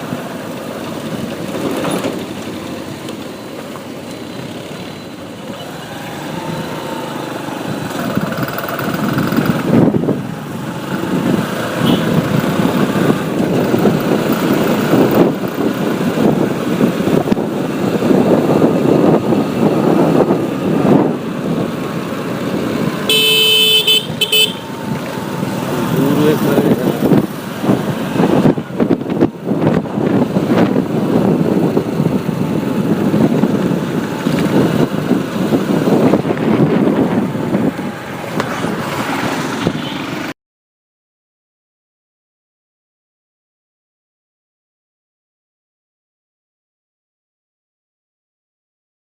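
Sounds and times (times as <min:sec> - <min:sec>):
motorbike engine: 0:00.0 - 0:40.3
passing vehicles: 0:00.0 - 0:40.4
wind: 0:00.0 - 0:40.4
vehicle horn honking: 0:11.8 - 0:12.2, 0:23.1 - 0:24.8.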